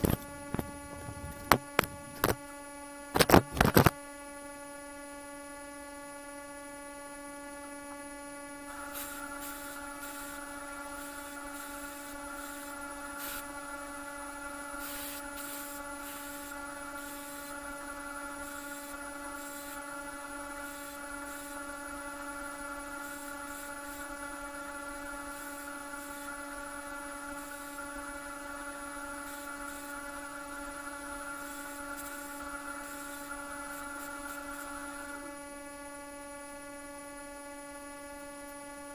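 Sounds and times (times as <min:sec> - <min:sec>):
drill bit cutting steel: 0:08.7 - 0:35.3
power drill motor humming: 0:08.7 - 0:35.4.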